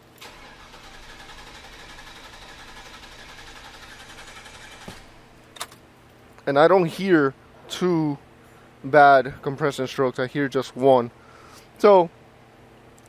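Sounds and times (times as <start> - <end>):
engine cranking on starter: 0.2 - 5.4.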